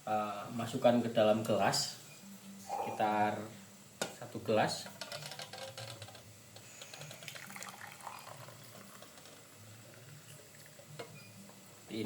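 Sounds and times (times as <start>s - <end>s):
liquid pouring into glass: 7.0s - 9.3s.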